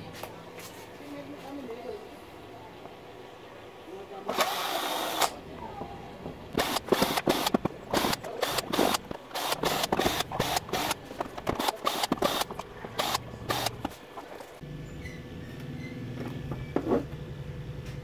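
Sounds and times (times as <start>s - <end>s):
hard objects clicking and knocking: 5.8s - 14.4s.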